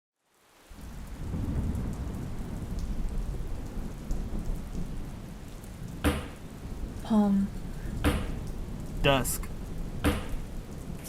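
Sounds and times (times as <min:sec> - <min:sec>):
steady rain: 0:00.2 - 0:11.0
raindrop ticks: 0:00.8 - 0:11.0.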